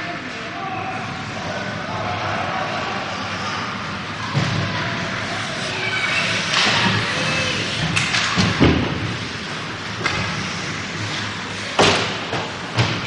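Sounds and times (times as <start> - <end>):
arena background noise: 0.0 - 13.0
puck and players hitting boards: 6.4 - 9.1, 9.9 - 10.4, 11.7 - 13.0.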